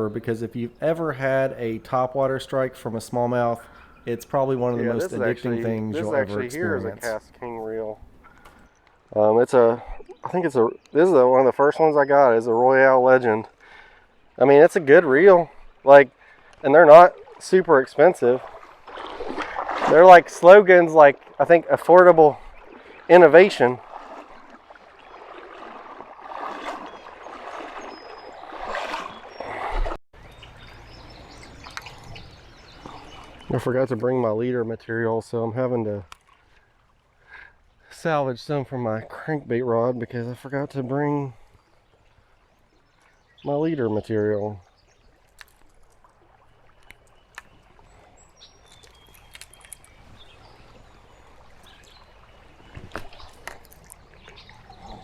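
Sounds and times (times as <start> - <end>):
faint outdoor ambience: 0.0 - 18.6, 30.2 - 55.0
creek water trickling: 0.0 - 55.0
high bird chirps: 30.2 - 33.6, 46.5 - 55.0
light clicks: 48.6 - 50.0.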